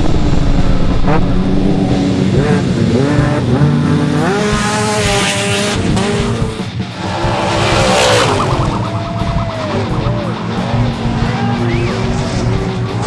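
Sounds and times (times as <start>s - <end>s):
truck engine revving hard: 0.0s - 13.0s.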